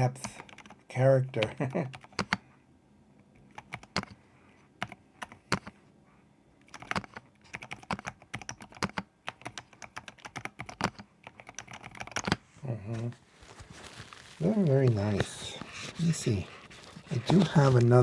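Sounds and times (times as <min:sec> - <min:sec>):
typing on a keyboard: 0:00.1 - 0:00.8, 0:01.4 - 0:02.4, 0:03.5 - 0:04.2, 0:04.8 - 0:05.8, 0:06.6 - 0:12.4.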